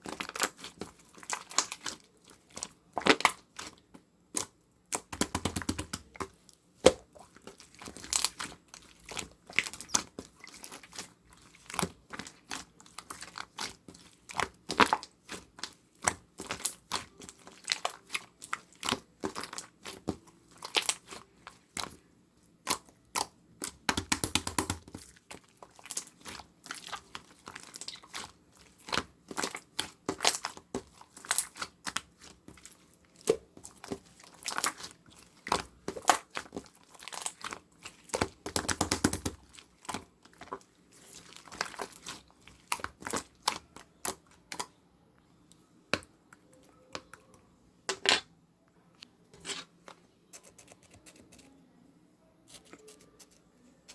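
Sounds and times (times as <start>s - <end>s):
slime crackling and popping: 22.6s - 44.6s.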